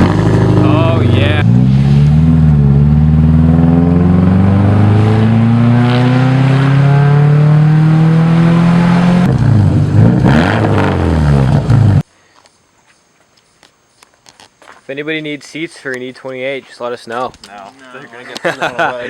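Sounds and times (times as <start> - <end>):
car engine accelerating: 0.0 - 12.0.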